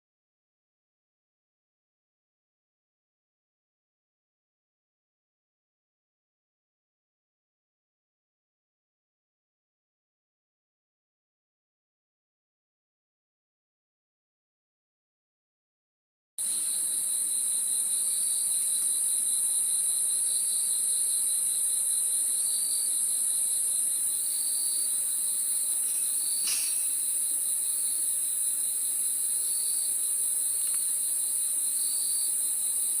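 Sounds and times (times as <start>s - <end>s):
high-pitched insect drone: 16.4s - 33.0s
low pulsing insect trill: 16.4s - 33.0s
short insect chirp: 16.4s - 33.0s
brief click: 26.4s - 27.0s.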